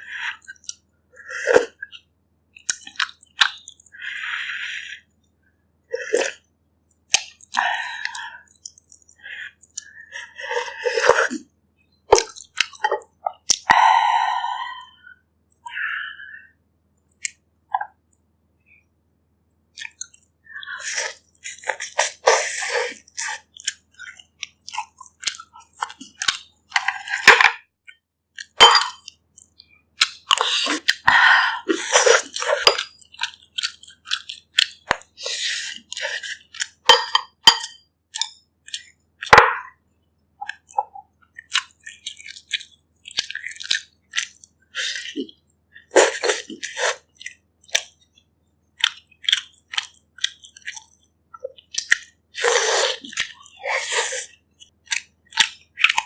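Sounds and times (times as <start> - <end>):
wet chewing and smacking: 1.7 - 4.0, 6.4 - 10.0, 11.0 - 13.8, 19.7 - 20.4, 21.1 - 31.1, 31.8 - 56.0.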